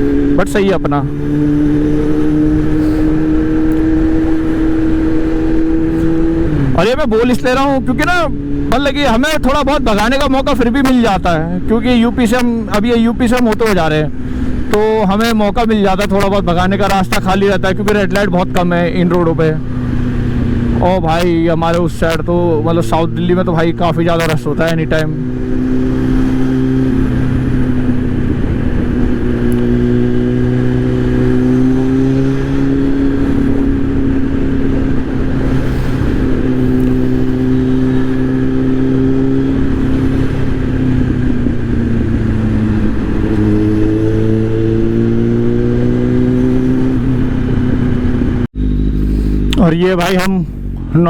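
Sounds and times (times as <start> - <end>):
motorcycle engine running: 0.0 - 51.0
wind on microphone: 25.1 - 48.6.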